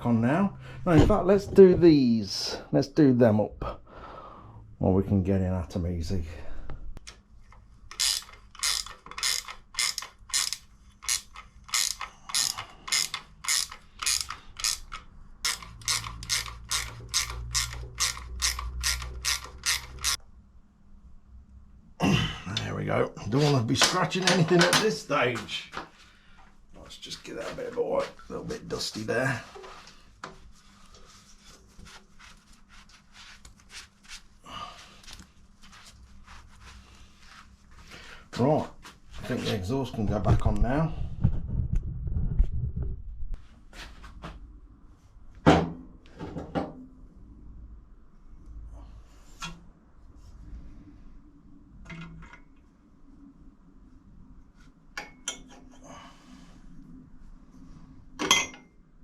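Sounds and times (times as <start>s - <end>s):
socket ratchet clicking: 7.9s - 20.2s
cloth rubbing strokes: 26.9s - 38.1s.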